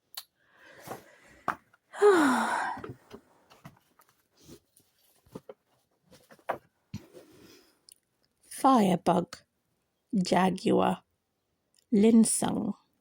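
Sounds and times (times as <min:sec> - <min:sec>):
woman sighing: 0:01.9 - 0:03.0.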